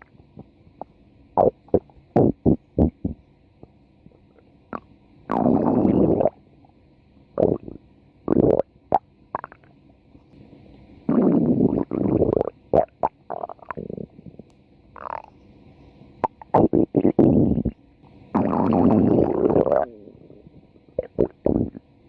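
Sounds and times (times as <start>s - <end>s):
stomach growling: 0.8s - 3.2s, 4.1s - 6.4s, 7.4s - 9.7s, 11.1s - 15.3s, 16.2s - 21.8s.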